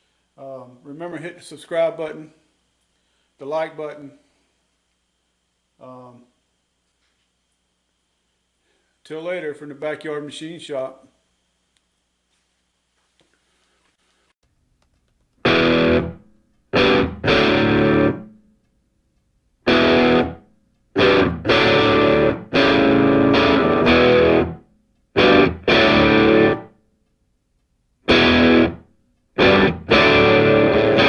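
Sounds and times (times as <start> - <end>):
distorted electric guitar chords: 15.4 - 18.4, 19.6 - 26.7, 28.0 - 31.0.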